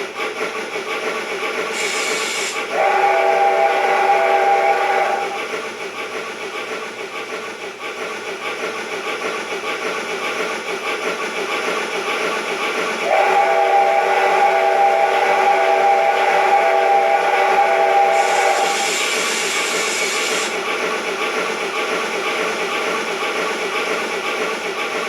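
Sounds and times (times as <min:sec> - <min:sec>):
steam locomotive chuffing: 0:00.0 - 0:25.0
steam whistle blast: 0:01.8 - 0:05.5, 0:13.0 - 0:20.5.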